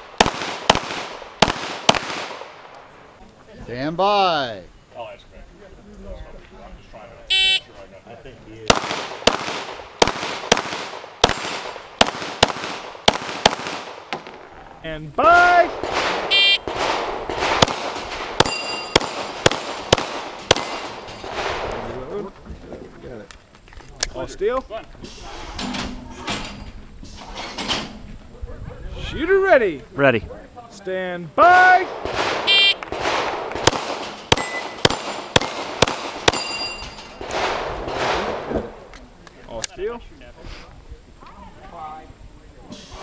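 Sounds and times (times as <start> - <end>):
pistol shots: 0.0 - 2.7, 8.7 - 14.4, 15.8 - 21.8, 31.9 - 38.5
shot timer beep: 7.3 - 7.6, 16.3 - 16.6, 32.5 - 32.8
bullets ringing on steel plates: 18.4 - 19.2, 34.3 - 35.5, 36.3 - 37.2.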